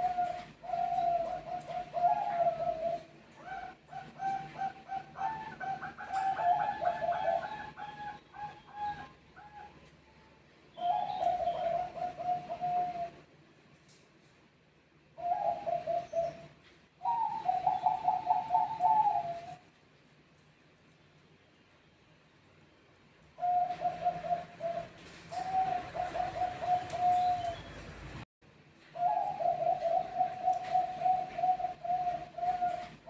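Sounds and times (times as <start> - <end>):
doves cooing: 0.0 - 9.9, 10.8 - 13.3, 15.2 - 19.7, 23.4 - 28.1, 28.9 - 33.0.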